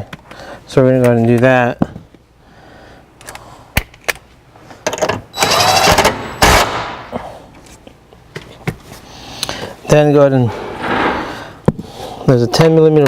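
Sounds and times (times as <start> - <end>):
impact gun bursts: 5.4 - 7.1.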